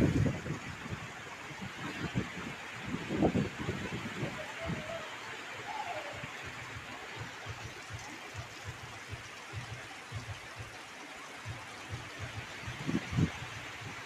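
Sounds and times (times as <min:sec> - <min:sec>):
strong wind hissing: 0:00.0 - 0:06.8
wind buffeting microphone: 0:00.0 - 0:10.8, 0:11.4 - 0:14.0.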